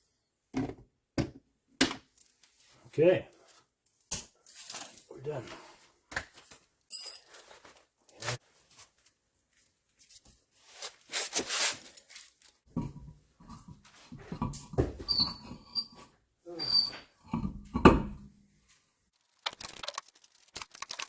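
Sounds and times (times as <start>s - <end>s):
tools and parts clattering: 4.4s - 5.3s, 6.4s - 7.8s.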